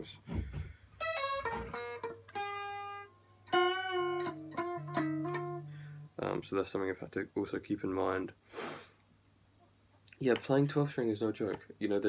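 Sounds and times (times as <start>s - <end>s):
guitar plucked single notes: 1.0s - 6.2s.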